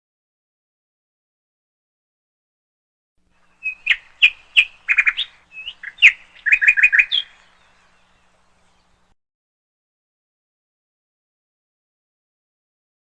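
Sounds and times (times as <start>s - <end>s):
bird chirping: 3.4s - 9.2s.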